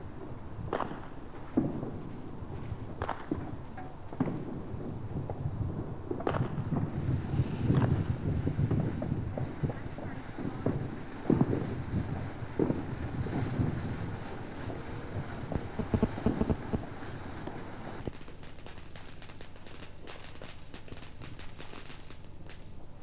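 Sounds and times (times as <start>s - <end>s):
wind buffeting microphone: 4.3s - 18.1s
rapid small crackling clicks: 14.2s - 22.7s.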